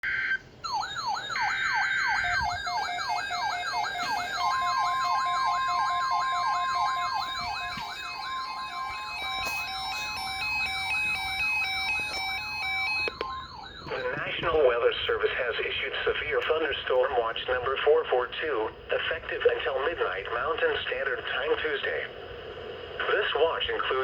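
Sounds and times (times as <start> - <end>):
electronic siren wailing: 0.0 - 14.8
steady single-pitch alert tone: 0.0 - 14.8
emergency alert tones: 0.0 - 16.4.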